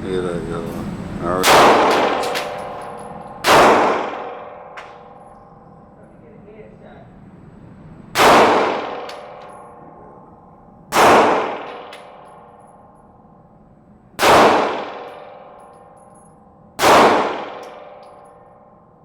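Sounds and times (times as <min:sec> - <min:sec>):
steady hum: 0:00.0 - 0:19.0
handgun shots echoing: 0:01.4 - 0:05.3, 0:08.2 - 0:09.7, 0:10.9 - 0:12.6, 0:14.2 - 0:16.0, 0:16.8 - 0:18.4.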